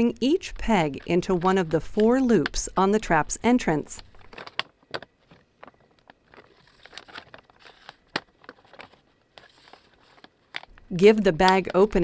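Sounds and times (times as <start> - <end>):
plastic bag crinkling: 4.0 - 10.8.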